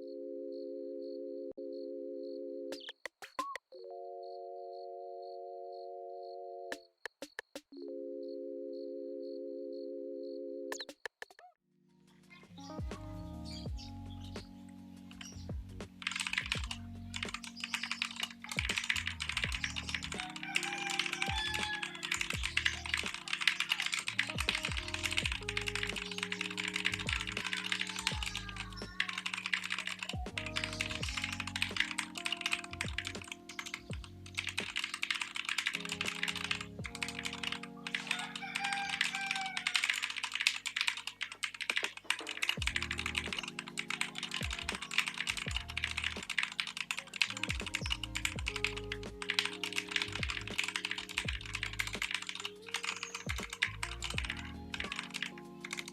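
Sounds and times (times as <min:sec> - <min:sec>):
background music: 0:00.0 - 0:07.0, 0:11.8 - 0:55.9
mechanical keyboard typing: 0:15.2 - 0:55.9.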